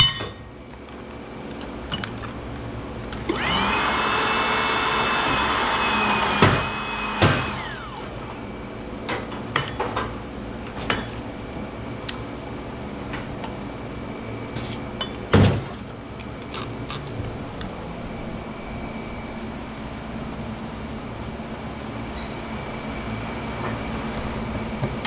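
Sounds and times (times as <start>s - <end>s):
power tool motor whining: 3.2s - 8.6s.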